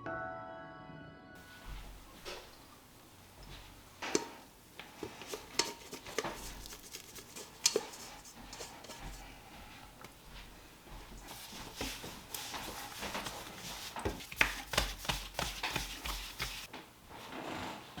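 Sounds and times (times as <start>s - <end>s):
kitchenware clicking and knocking: 1.4s - 9.5s.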